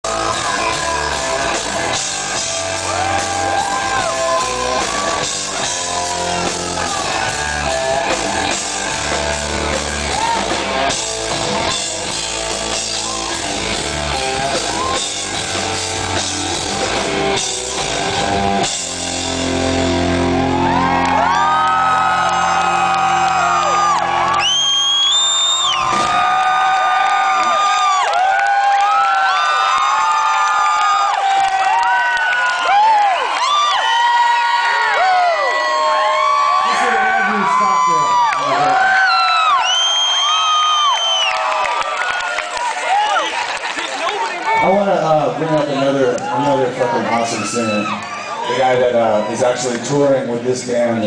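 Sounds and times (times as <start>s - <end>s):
rock band playing: 0.0s - 29.4s.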